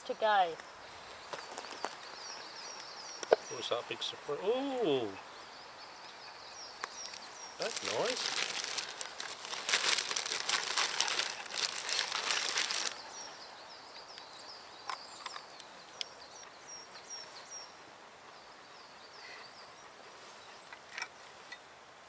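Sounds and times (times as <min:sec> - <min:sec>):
small bird chirping: 0:00.0 - 0:20.7
crinkling handling noise: 0:00.6 - 0:03.4, 0:06.8 - 0:13.3.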